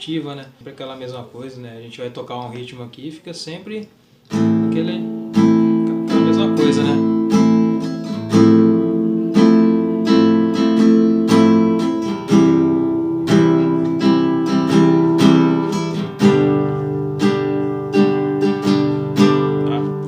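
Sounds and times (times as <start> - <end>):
acoustic guitar strumming: 4.3 - 20.0.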